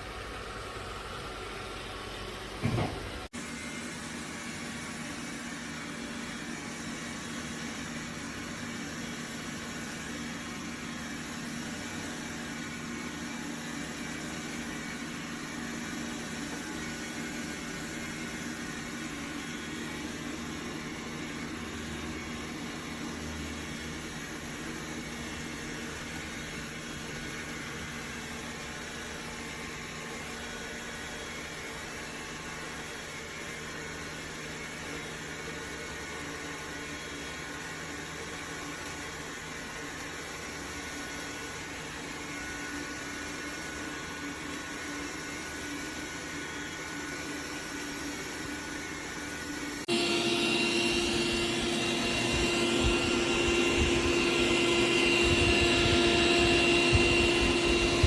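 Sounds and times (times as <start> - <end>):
robot vacuum whirring: 36.2 - 58.0.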